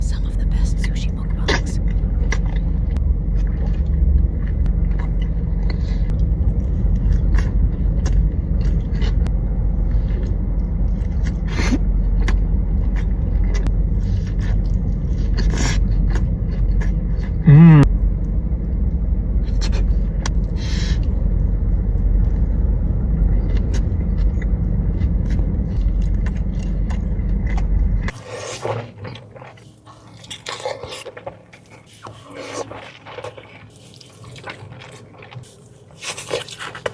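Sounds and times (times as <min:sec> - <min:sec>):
loud low rumble: 0:00.0 - 0:28.1
wet chewing clicks and smacks: 0:01.3 - 0:17.4, 0:18.2 - 0:36.9
short hum: 0:17.4 - 0:18.1.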